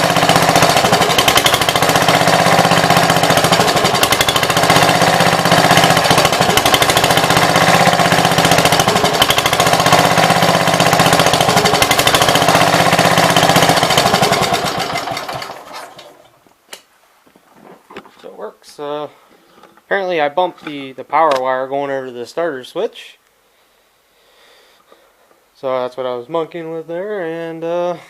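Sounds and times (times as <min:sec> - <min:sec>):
tractor engine running: 0:00.0 - 0:16.4.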